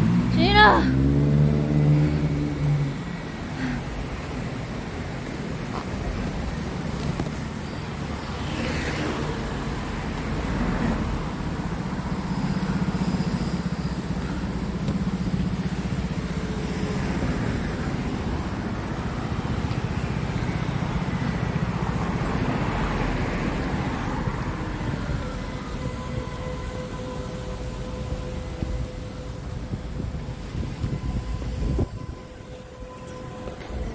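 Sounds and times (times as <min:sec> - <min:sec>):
road traffic noise: 0:00.0 - 0:33.9.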